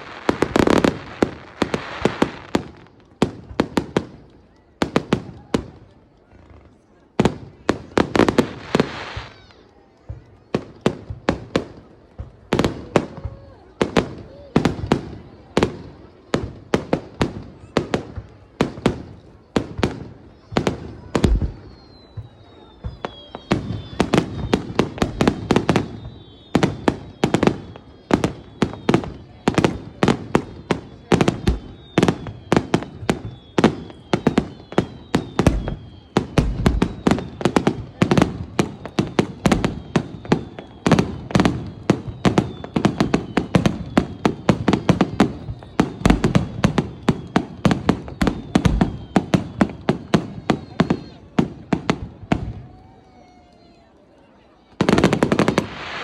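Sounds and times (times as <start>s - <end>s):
firework crackling spray: 0.0s - 4.2s, 7.3s - 9.4s, 54.8s - 56.0s
fireworks bursting with sharp bangs: 0.0s - 56.0s.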